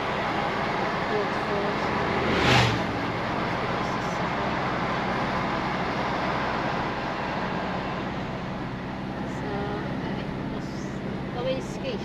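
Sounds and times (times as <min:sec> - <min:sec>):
engine hum: 0:00.0 - 0:12.0
road noise: 0:00.0 - 0:12.0
whoosh: 0:01.8 - 0:03.8.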